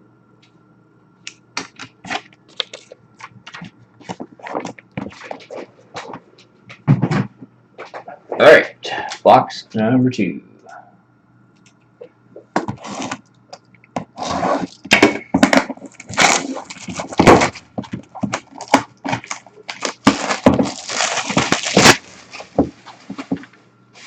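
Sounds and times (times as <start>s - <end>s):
cardboard knocks: 6.8s - 7.4s
packaging crackling and ripping: 14.2s - 23.4s.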